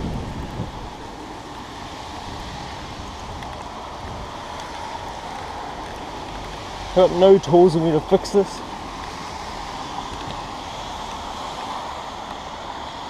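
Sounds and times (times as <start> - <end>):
wind noise on microphone: 0.0 - 7.2, 8.1 - 13.0
rain: 0.0 - 13.0.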